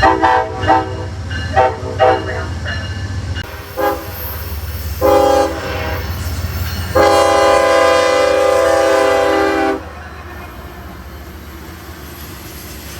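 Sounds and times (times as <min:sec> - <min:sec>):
locomotive air horn: 0:00.0 - 0:02.5, 0:03.7 - 0:04.2, 0:05.0 - 0:06.2, 0:06.9 - 0:10.0
rumble of passing train: 0:00.0 - 0:12.9.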